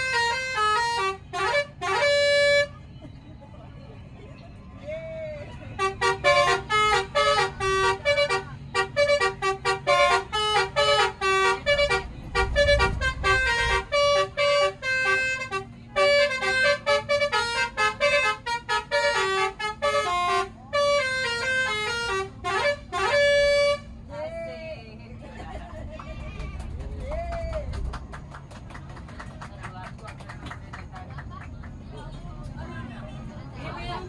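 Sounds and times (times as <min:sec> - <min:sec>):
bus air horns playing tune: 0:00.0 - 0:02.9, 0:05.8 - 0:24.1
low rumble: 0:11.2 - 0:16.0, 0:25.5 - 0:29.0.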